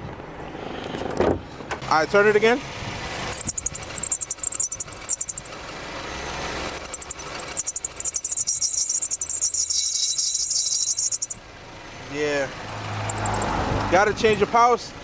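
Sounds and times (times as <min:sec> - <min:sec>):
car engine idling: 0:01.4 - 0:15.0
power steering pump squealing: 0:02.4 - 0:11.5, 0:12.4 - 0:14.7.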